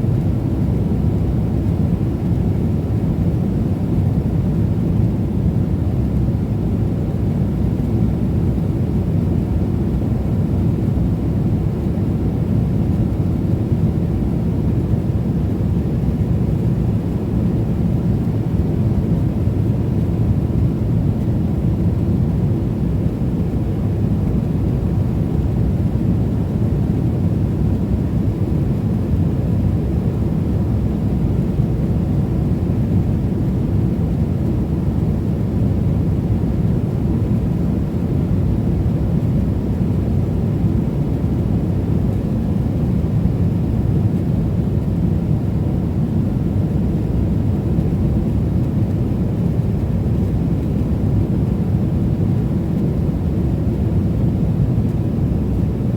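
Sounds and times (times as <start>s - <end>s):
airliner cabin rumble: 23.2s - 55.9s.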